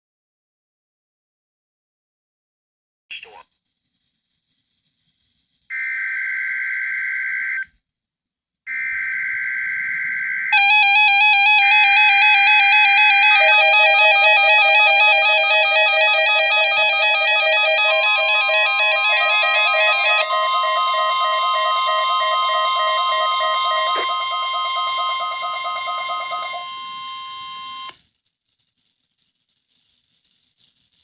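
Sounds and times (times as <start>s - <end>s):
pulsing electronic alarm beeps: 10.6s - 27.9s
steady electronic tone: 10.6s - 27.9s.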